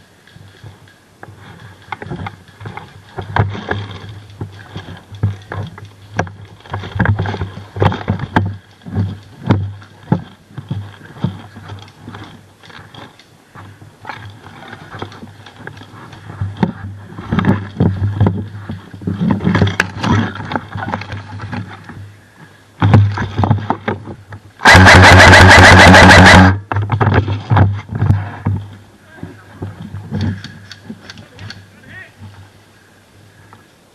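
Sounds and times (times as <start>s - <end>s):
airsoft gun full-auto burst: 24.6s - 26.6s
gun motor whine: 24.6s - 26.6s.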